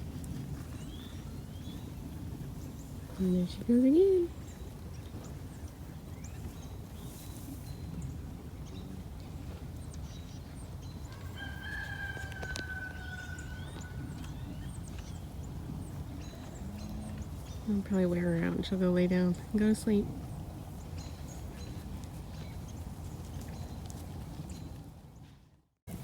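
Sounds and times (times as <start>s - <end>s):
rooster crowing: 11.1s - 14.2s.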